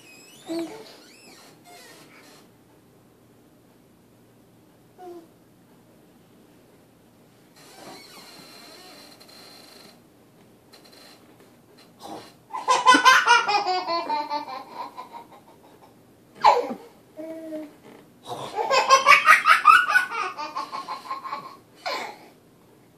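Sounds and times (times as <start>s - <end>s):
baby belly laughing: 12.5s - 16.9s, 18.5s - 22.2s.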